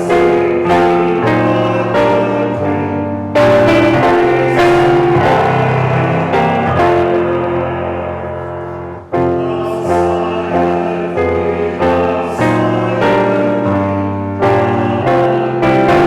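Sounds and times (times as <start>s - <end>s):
piano playing slow chords: 0.0s - 16.0s.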